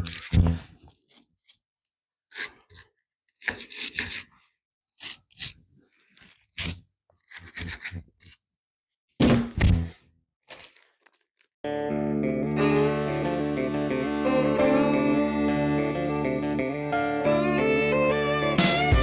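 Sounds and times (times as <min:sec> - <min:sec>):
scraping and rubbing on metal: 0:02.2 - 0:08.4.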